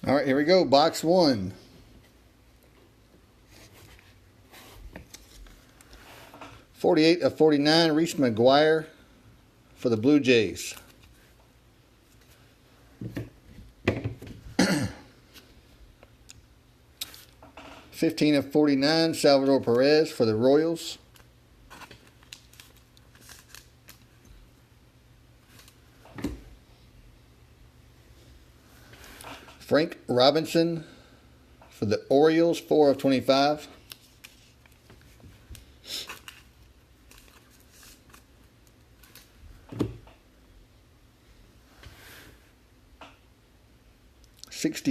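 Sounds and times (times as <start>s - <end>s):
man clearing his throat: 14.6s - 15.1s.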